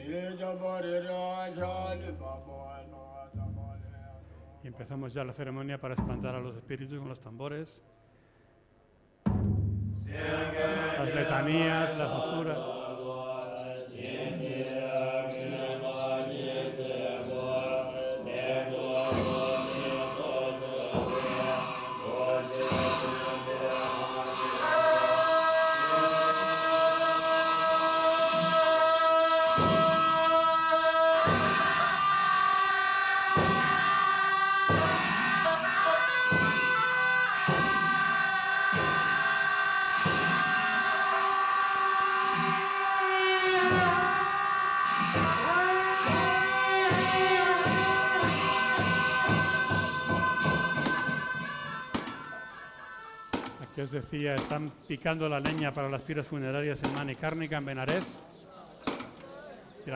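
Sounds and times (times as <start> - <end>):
sharp percussion strikes: 9.3 - 12.7, 18.3 - 53.8
group chanting drone: 10.1 - 53.1.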